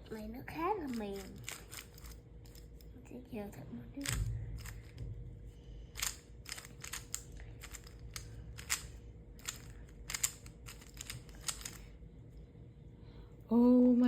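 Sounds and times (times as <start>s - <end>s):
speed cube plastic clicks: 0.9s - 2.6s, 6.0s - 11.8s.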